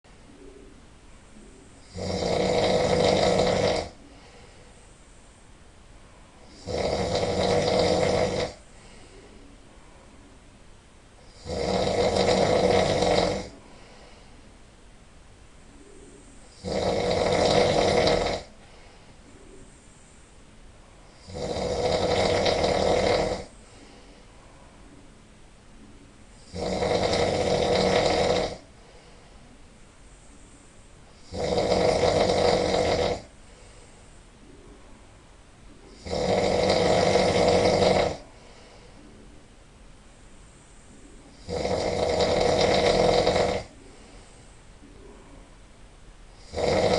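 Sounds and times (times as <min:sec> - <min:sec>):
person snoring loudly: 0:01.8 - 0:04.4, 0:06.5 - 0:09.0, 0:11.2 - 0:13.9, 0:16.5 - 0:18.5, 0:21.1 - 0:23.8, 0:26.4 - 0:28.7, 0:31.2 - 0:33.3, 0:35.9 - 0:38.4, 0:41.3 - 0:44.1, 0:46.4 - 0:46.9.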